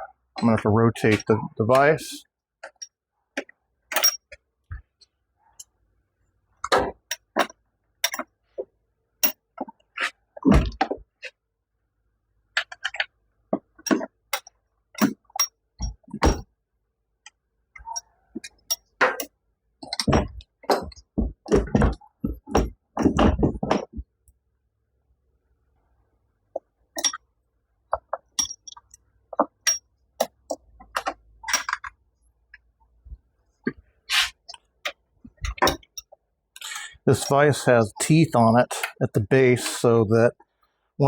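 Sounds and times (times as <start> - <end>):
metal clinks and knocks: 3.9 - 4.4, 6.6 - 8.4, 17.8 - 23.9, 28.0 - 32.0, 34.8 - 37.4.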